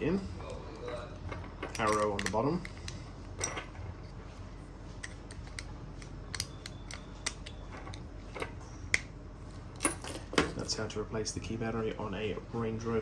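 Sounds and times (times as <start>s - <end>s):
key fob clicks: 6.3s - 7.6s.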